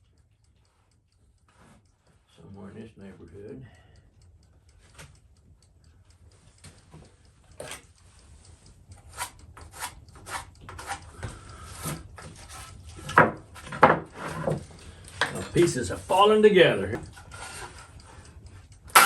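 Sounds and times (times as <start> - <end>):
light wood scrapes: 9.1 - 11.0, 11.6 - 12.8.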